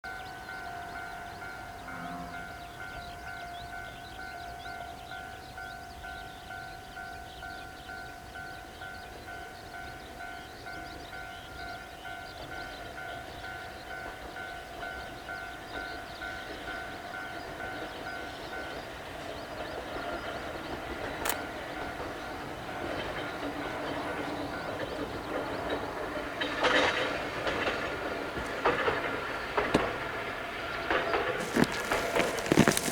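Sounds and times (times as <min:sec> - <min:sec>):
train running: 0:00.1 - 0:32.9
sharp click: 0:21.2 - 0:21.4.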